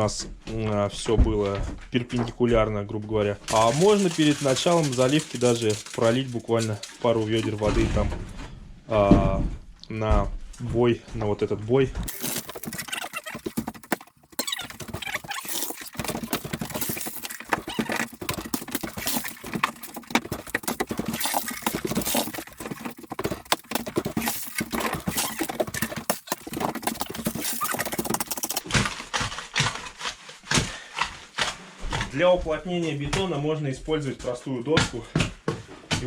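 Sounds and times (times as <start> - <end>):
tools scraping wet concrete: 3.5 - 7.8, 12.1 - 31.6
hand tools knocking on stone: 12.1 - 28.7.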